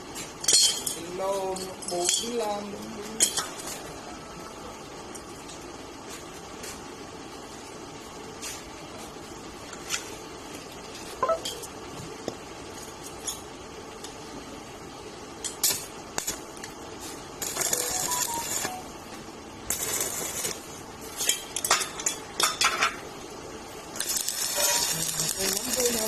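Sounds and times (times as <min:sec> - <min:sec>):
hissing crackling bursts: 0:15.6 - 0:18.9, 0:19.6 - 0:21.1, 0:23.9 - 0:26.0.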